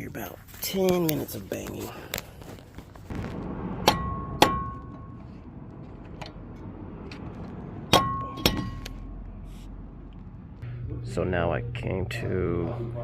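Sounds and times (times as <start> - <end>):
hammer striking metal: 3.8 - 5.2, 7.9 - 9.0.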